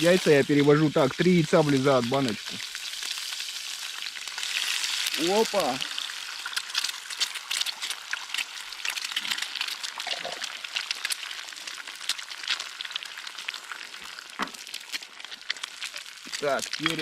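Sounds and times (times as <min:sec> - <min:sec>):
eggs sizzling in a pan: 0:00.0 - 0:17.0.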